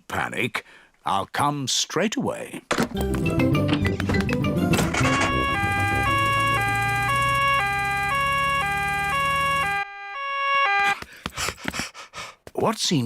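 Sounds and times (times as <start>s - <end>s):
cartoon two-tone siren: 4.7s - 11.0s.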